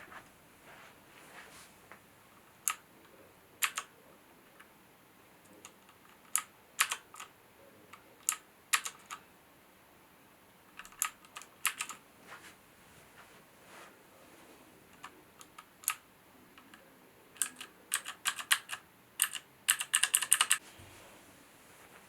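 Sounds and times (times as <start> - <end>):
mechanical keyboard clicks: 3.6 - 3.9, 5.6 - 7.3, 8.2 - 9.2, 10.8 - 12.0, 17.4 - 20.6.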